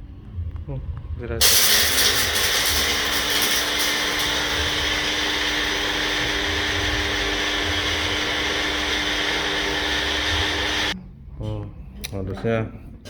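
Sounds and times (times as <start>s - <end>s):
small motorised appliance running: 1.4s - 11.0s.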